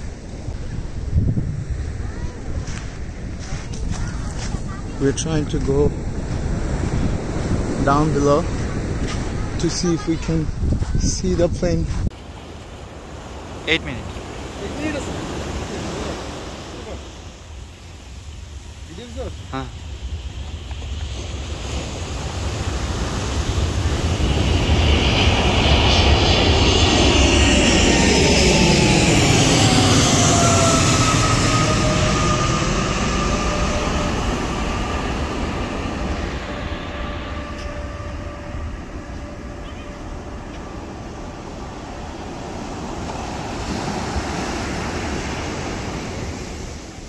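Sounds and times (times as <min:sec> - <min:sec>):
jet engines roaring: 0:00.0 - 0:10.6, 0:11.4 - 0:47.0
surf breaking on beach: 0:12.1 - 0:27.0, 0:28.1 - 0:47.0.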